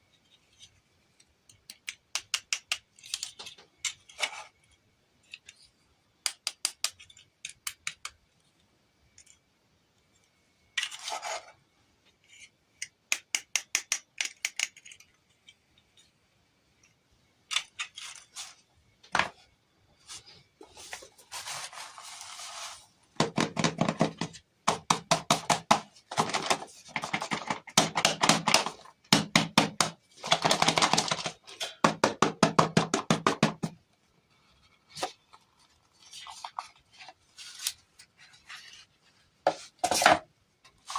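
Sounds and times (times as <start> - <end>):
plastic toy pieces clicking: 1.5 - 4.3, 12.8 - 15.1
packaging rustling: 30.2 - 31.5.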